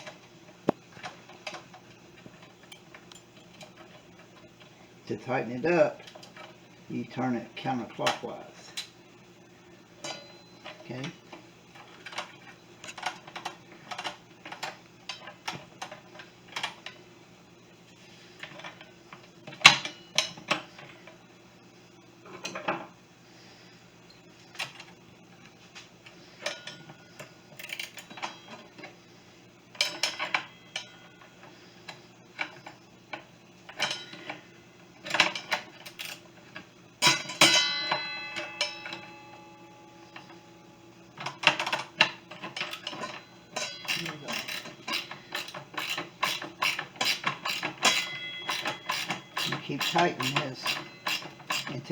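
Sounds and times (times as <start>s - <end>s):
metal tools clicking and clinking: 26.4s - 28.6s, 35.0s - 36.2s, 41.2s - 51.9s
ringing metallic clank: 37.0s - 39.7s, 47.0s - 51.7s.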